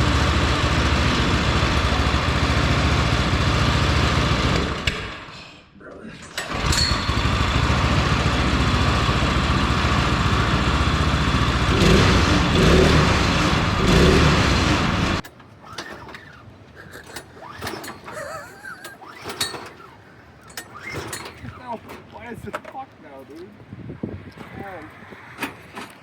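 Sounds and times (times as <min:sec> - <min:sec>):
lawnmower engine running loudly: 0:00.0 - 0:05.0, 0:06.4 - 0:21.6.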